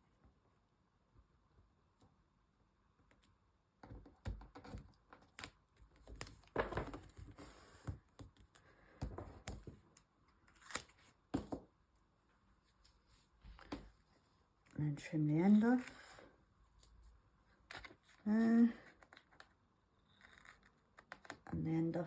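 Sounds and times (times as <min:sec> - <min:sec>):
tape tapping and scratching: 0:03.8 - 0:09.8.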